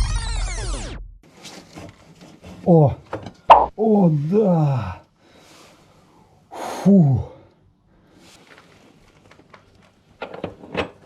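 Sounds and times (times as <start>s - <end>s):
man exclaiming: 3.8s - 5.0s, 6.7s - 7.4s.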